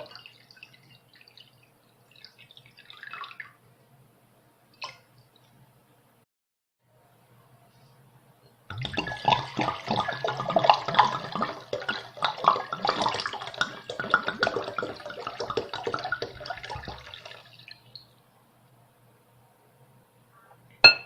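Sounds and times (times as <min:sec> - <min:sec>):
water poured into a bowl: 0:00.0 - 0:03.6, 0:08.7 - 0:18.1.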